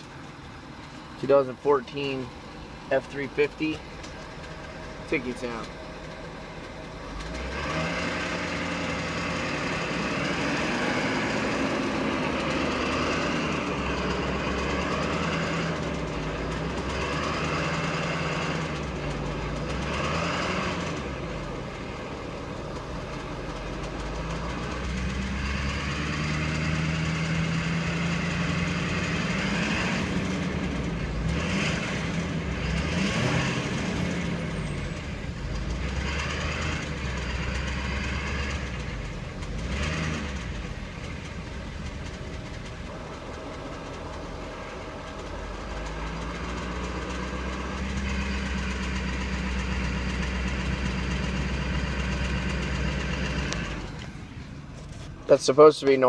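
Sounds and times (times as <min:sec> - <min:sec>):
diesel engine idling: 0:00.0 - 0:56.0
engine ticking: 0:00.0 - 0:56.0.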